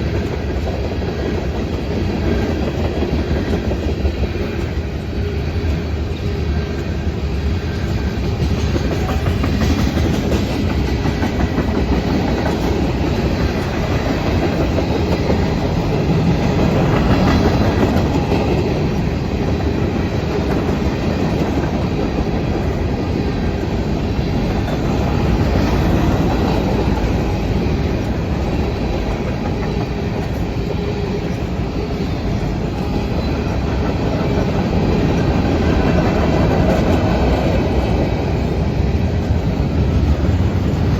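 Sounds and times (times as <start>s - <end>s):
freight train wheels rumbling: 0.0s - 40.9s.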